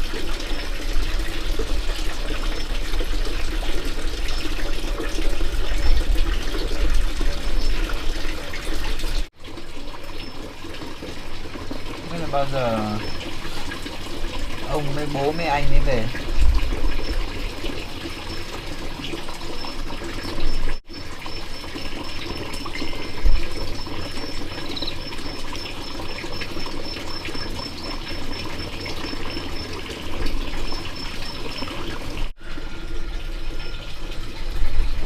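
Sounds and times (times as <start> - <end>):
running water: 0.0 - 35.0.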